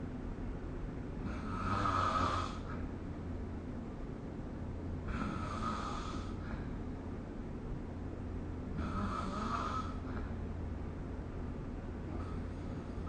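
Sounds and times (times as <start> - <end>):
person snoring: 1.2 - 2.8, 5.1 - 6.4, 8.8 - 10.0
low hum: 6.1 - 13.0.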